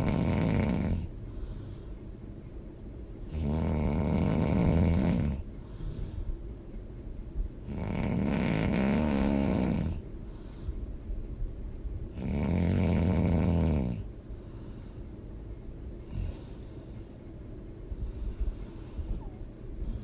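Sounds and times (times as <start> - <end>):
person snoring loudly: 0.0 - 1.1, 3.3 - 5.4, 7.7 - 10.0, 12.2 - 14.0.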